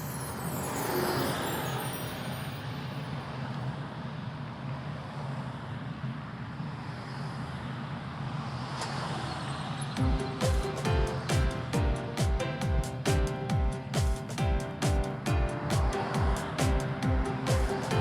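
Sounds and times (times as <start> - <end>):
music with deep bass thumps: 10.0 - 18.0.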